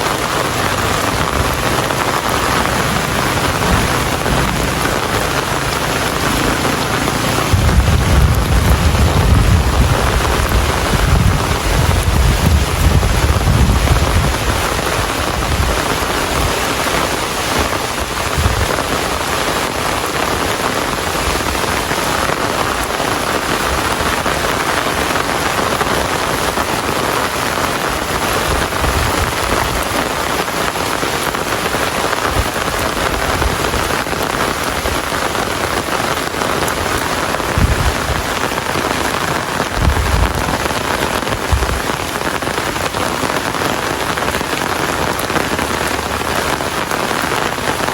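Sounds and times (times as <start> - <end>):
low rumbles: 0.0 - 16.5, 36.7 - 42.9
heavy rain falling: 0.0 - 47.9.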